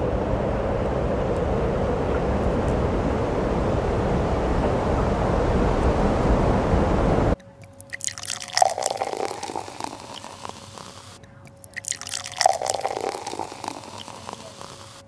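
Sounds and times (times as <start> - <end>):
faint steady tone: 0.0 - 15.0
water-like dripping clicks: 7.3 - 15.0.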